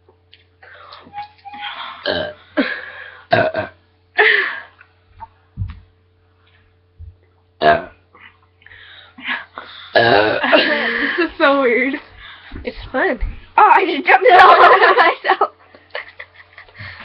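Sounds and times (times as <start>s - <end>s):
girls burping: 2.0s - 2.4s, 10.0s - 10.9s.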